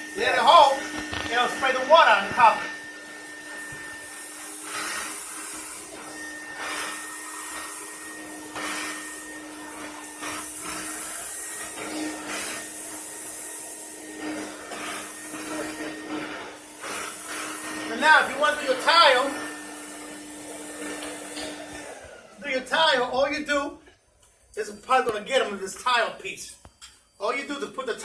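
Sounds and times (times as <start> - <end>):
vacuum cleaner motor hum: 0.0 - 22.4.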